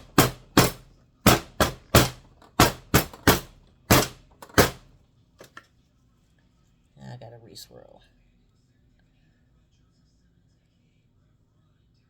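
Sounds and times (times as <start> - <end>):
equipment knocking on work surface: 0.0 - 5.6.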